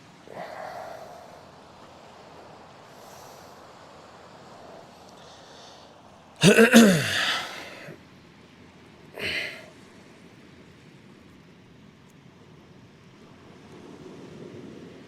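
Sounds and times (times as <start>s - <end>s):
faint wind: 0.0s - 15.0s
surf hiss: 0.0s - 15.0s
short breathy noise: 0.3s - 1.8s
man sighing: 6.4s - 7.9s, 9.2s - 9.7s.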